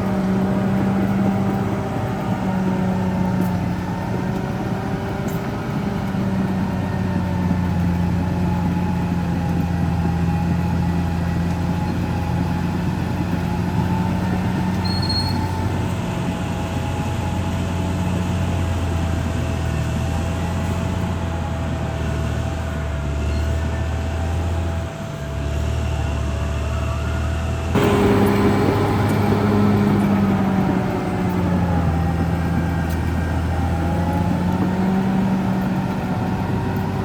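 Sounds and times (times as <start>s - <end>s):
bulldozer diesel engine: 0.0s - 37.0s.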